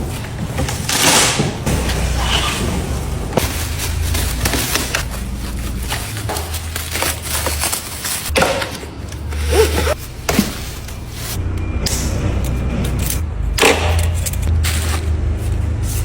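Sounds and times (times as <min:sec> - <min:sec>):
packaging knocking and scraping: 0:00.1 - 0:11.4.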